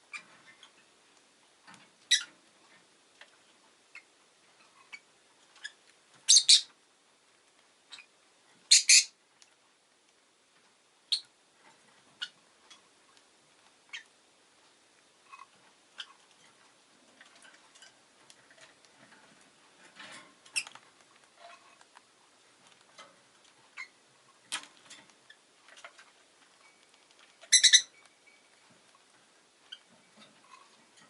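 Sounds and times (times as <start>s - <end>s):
lovebird chirps and squawks: 2.1s - 2.3s, 4.7s - 6.7s, 8.7s - 9.2s, 11.1s - 11.3s, 13.9s - 14.1s, 23.8s - 24.0s, 27.5s - 28.0s.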